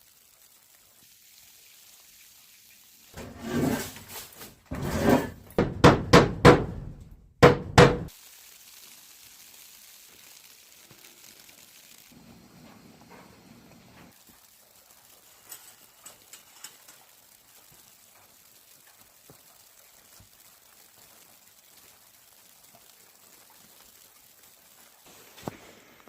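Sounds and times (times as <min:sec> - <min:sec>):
scraping rustling: 0:03.2 - 0:05.9
sharp knocks and thuds: 0:04.7 - 0:08.1.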